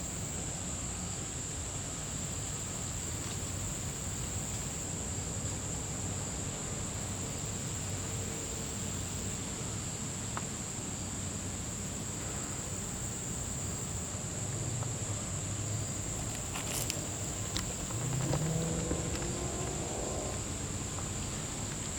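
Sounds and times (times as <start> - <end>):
high-pitched insect chorus: 6.9 - 21.9.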